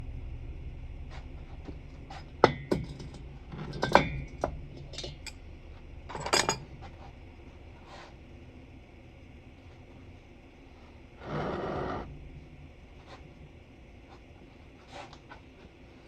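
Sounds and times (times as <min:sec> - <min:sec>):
metal tools clinking on hard surface: 0:06.1 - 0:06.7.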